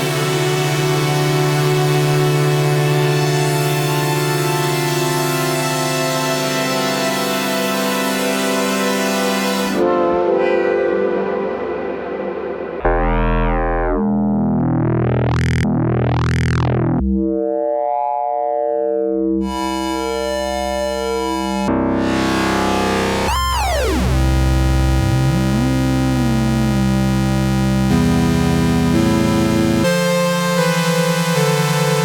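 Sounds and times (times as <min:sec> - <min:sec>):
synthesizer playing sustained notes: 0:00.0 - 0:32.0.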